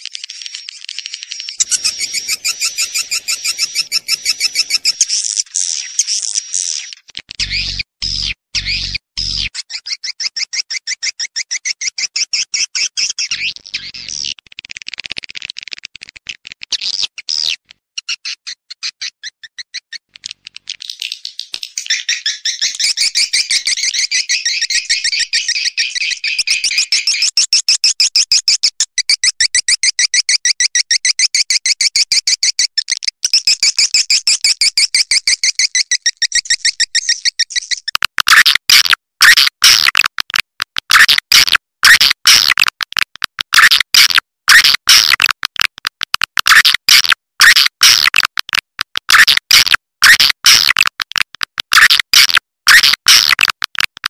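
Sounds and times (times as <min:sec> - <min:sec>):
swiftlet twittering chirps: 0:00.4 - 0:06.9.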